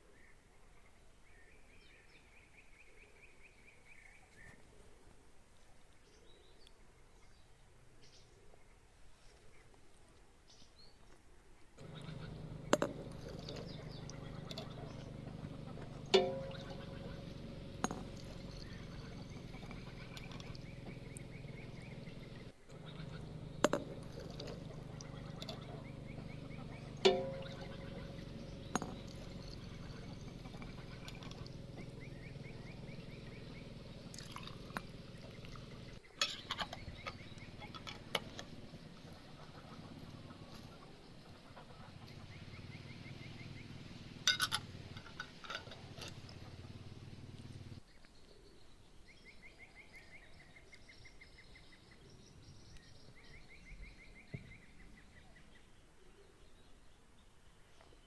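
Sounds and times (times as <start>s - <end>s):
kitchenware clinking: 11.8s - 22.0s, 22.8s - 32.0s, 34.1s - 38.5s, 44.3s - 46.6s
faint rapid chirping: 11.8s - 47.8s
steady low hum: 11.8s - 47.8s.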